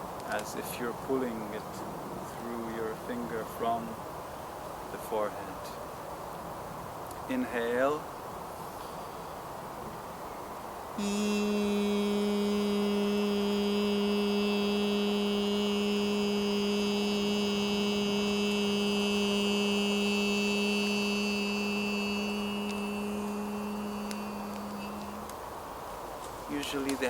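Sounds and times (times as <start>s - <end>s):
man chanting a held vowel: 0.3s - 1.7s, 2.3s - 4.0s, 5.0s - 5.8s, 7.3s - 8.0s, 11.0s - 25.3s, 26.5s - 27.0s.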